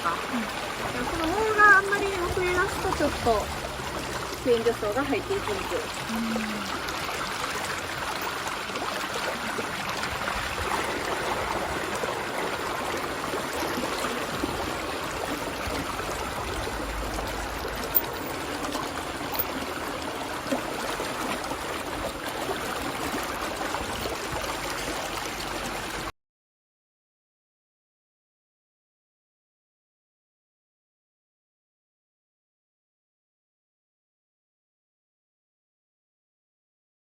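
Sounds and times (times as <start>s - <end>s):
shallow water rushing and trickling: 0.0s - 26.1s.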